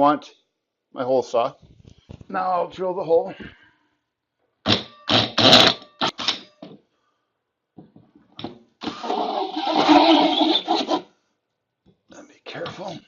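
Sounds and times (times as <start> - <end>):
drill cutting into drywall: 4.7 - 6.4, 8.8 - 11.1.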